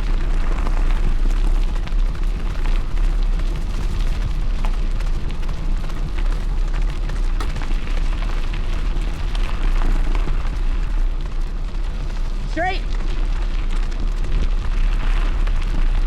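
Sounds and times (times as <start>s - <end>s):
bike clicks and rattles: 0.0s - 16.0s
wind buffeting microphone: 0.0s - 16.0s.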